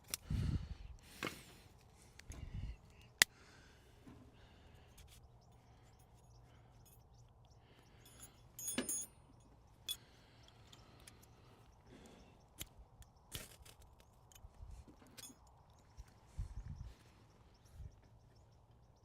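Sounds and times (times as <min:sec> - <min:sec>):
metal tent stove clinking: 0:08.0 - 0:09.2.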